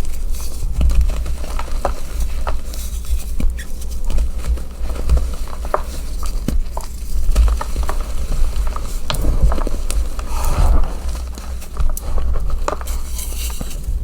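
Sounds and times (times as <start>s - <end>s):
steady low rumble: 9.1s - 12.0s.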